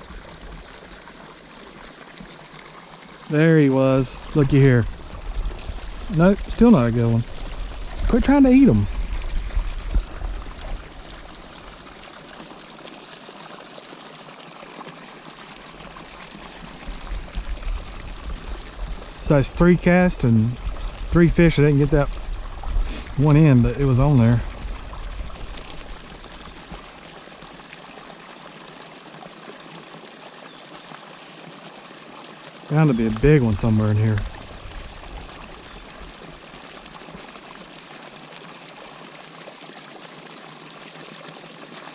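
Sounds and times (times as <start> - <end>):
water pouring into a pond: 0.0 - 41.9.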